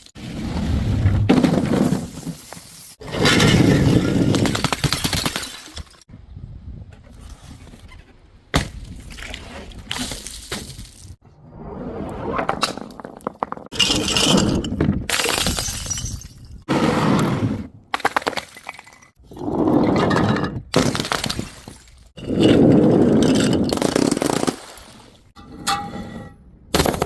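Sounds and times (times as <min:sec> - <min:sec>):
glass bottles smashing: 0:13.7 - 0:16.6.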